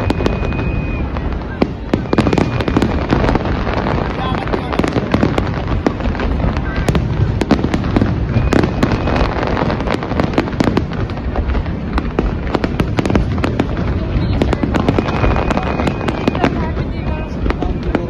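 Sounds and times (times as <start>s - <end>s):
fireworks bangs: 0.0s - 18.0s.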